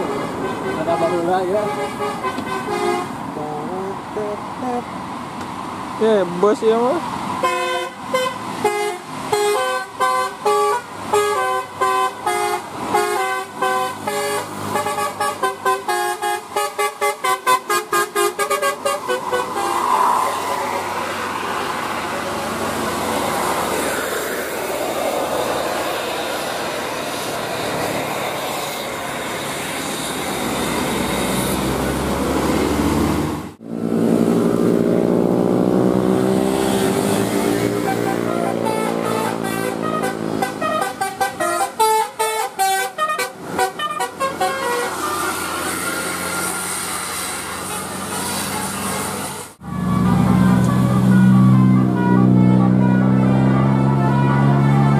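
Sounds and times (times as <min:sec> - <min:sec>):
bus horn playing tune: 0:00.0 - 0:03.2, 0:07.4 - 0:19.8, 0:36.1 - 0:46.1, 0:47.4 - 0:54.9
bus rushing by: 0:00.0 - 0:54.9
engine pitch rising: 0:19.0 - 0:40.9, 0:49.6 - 0:54.9.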